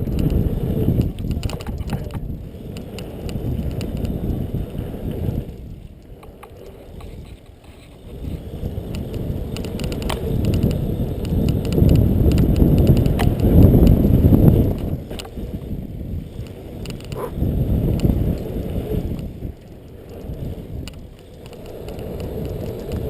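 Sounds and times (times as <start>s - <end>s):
bike tyre rumble: 0.0s - 23.0s
wind buffeting microphone: 0.0s - 23.0s
sharp clicks: 8.8s - 13.7s, 16.4s - 18.5s.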